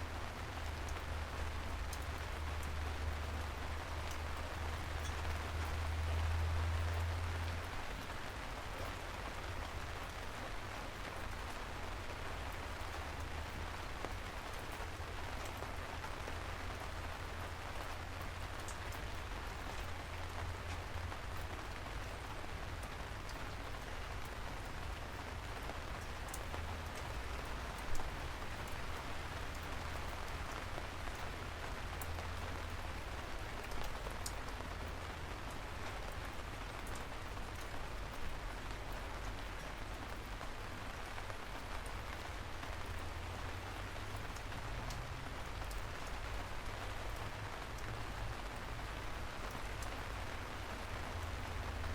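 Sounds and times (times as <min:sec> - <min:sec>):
raindrops ticking: 0:00.0 - 0:51.9
steady rain falling: 0:00.0 - 0:51.9.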